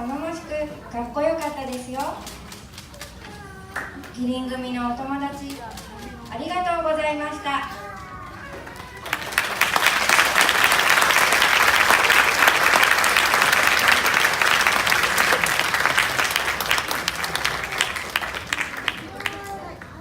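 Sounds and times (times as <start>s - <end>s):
audience applauding: 8.8s - 20.0s.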